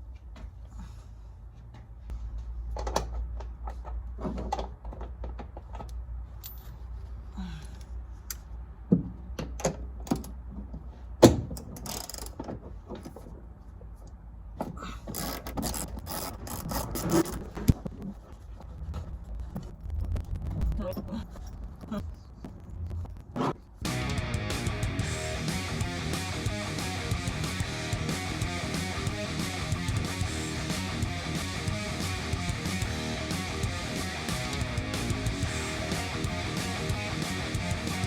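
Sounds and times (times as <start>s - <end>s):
ratchet wrench clicking: 11.8s - 12.4s.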